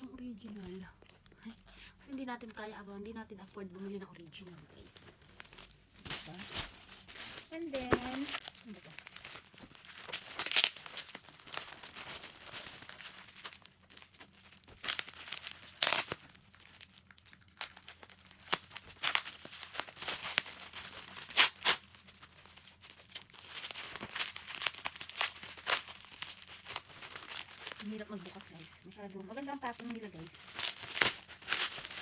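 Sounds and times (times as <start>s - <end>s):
packaging crinkling: 4.3s - 32.0s
packaging ripping: 4.6s - 32.0s.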